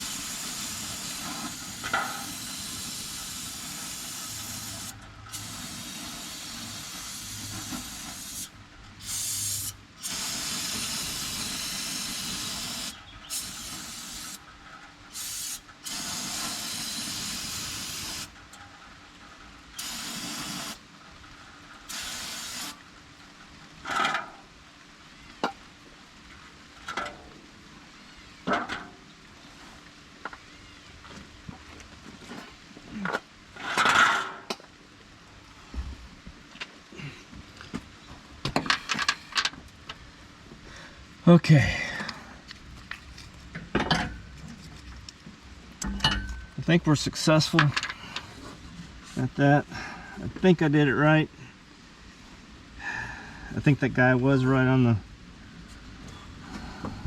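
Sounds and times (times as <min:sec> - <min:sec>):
hissing spray bursts: 0:00.0 - 0:14.4, 0:15.1 - 0:18.4, 0:19.8 - 0:20.8, 0:21.9 - 0:22.8.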